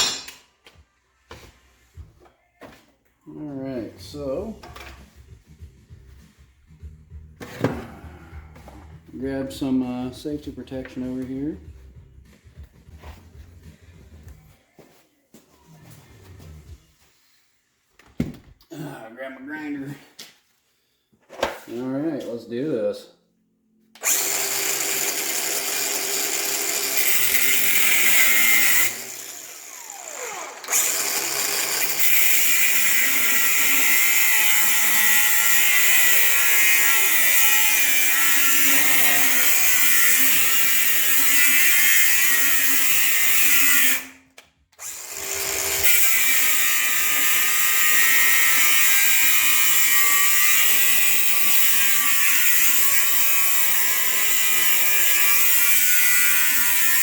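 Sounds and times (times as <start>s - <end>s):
angle grinder cutting steel: 0.0s - 0.4s, 24.0s - 44.2s, 44.8s - 57.0s.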